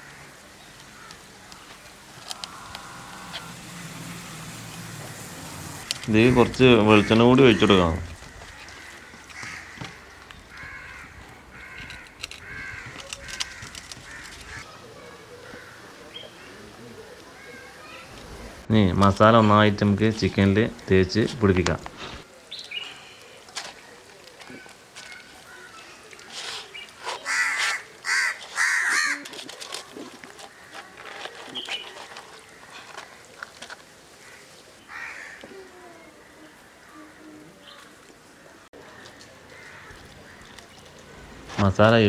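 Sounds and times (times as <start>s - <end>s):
crow cawing: 0.0s - 3.8s, 5.8s - 14.7s, 15.4s - 16.7s, 27.2s - 29.3s, 34.2s - 40.6s.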